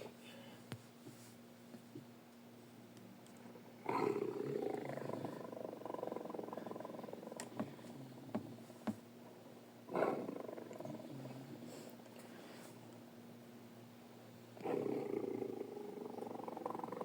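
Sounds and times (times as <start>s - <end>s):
low rumbling purr: 3.4s - 8.6s, 9.8s - 11.9s, 14.6s - 17.0s
tiger growling: 3.8s - 8.4s, 9.9s - 11.6s.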